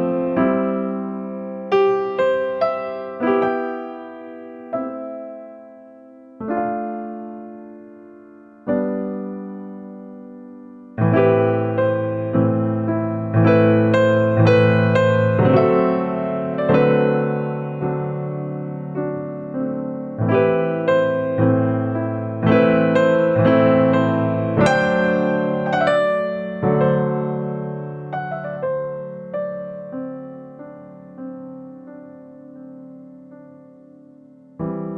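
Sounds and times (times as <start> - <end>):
slow piano music: 0.0 - 34.9.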